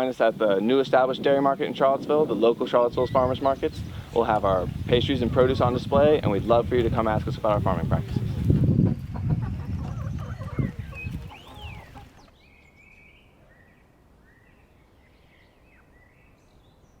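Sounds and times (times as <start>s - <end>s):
outdoor noise: 0.0s - 17.0s
chickens clucking: 2.9s - 12.3s.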